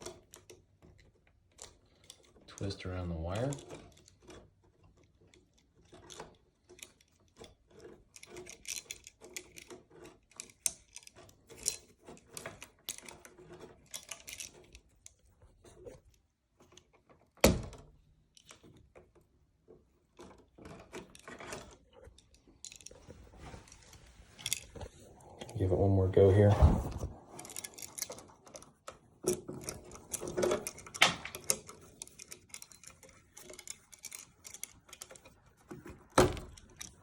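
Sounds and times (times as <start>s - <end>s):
wire twisting clicks and scrapes: 0.0s - 37.0s.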